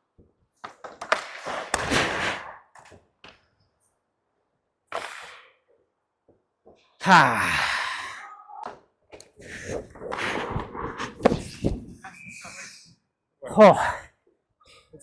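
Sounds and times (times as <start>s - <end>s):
skate blades scraping ice: 1.2s - 2.7s, 9.5s - 11.9s.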